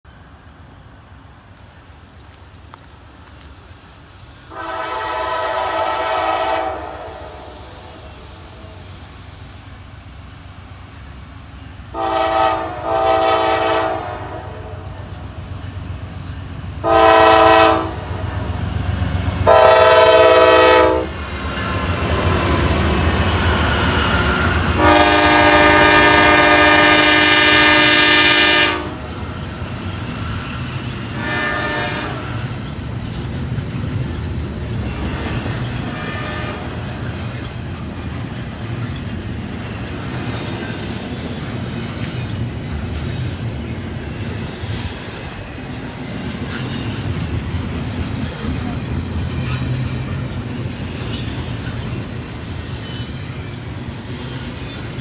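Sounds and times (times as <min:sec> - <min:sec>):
passing train rumble: 0:00.1 - 0:55.0
train air horn blasts: 0:04.5 - 0:08.8, 0:11.9 - 0:14.9, 0:16.8 - 0:18.6, 0:19.4 - 0:21.2, 0:23.7 - 0:29.1, 0:31.1 - 0:32.5, 0:35.8 - 0:36.8.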